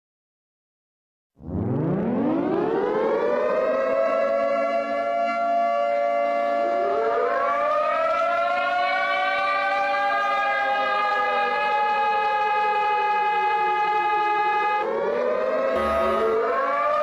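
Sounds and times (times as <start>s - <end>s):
civil defense siren wailing: 1.8s - 17.0s
second siren tone: 15.7s - 17.0s.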